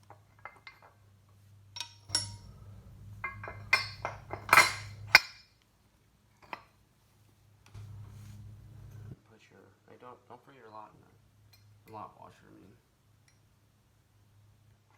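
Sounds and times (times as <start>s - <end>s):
metal parts clinking: 1.8s - 5.5s.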